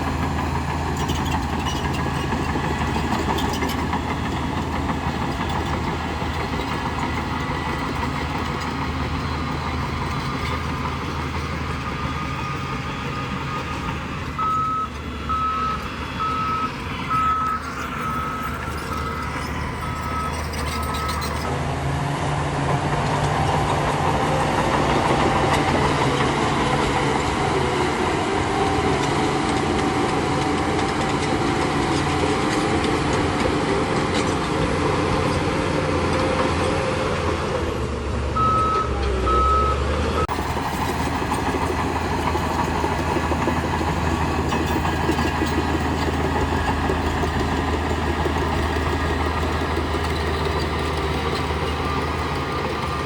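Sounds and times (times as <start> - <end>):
bulldozer diesel engine running: 0.0 - 53.0
reversing alarm beeps: 13.4 - 21.4, 38.4 - 40.3.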